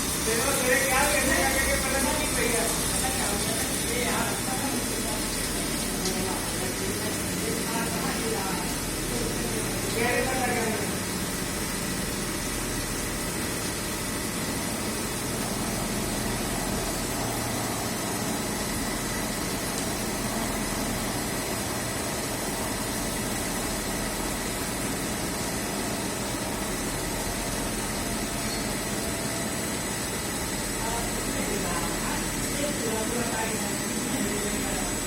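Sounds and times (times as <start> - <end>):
mechanical hum and hiss: 0.0 - 35.0.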